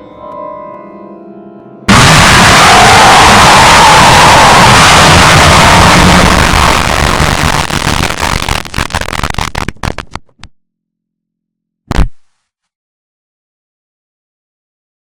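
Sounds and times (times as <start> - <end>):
short loud noise burst: 1.9 - 10.2
harsh distorted noise: 1.9 - 10.4, 11.9 - 12.3.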